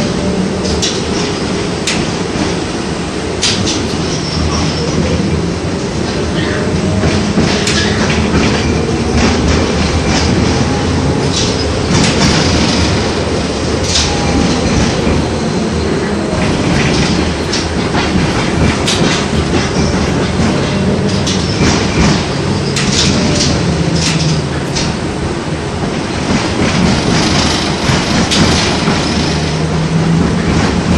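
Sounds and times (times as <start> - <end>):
tram wheels rumbling on track: 0.0 - 30.9
clacks and rattles: 11.3 - 13.1, 16.4 - 25.0, 25.8 - 30.9.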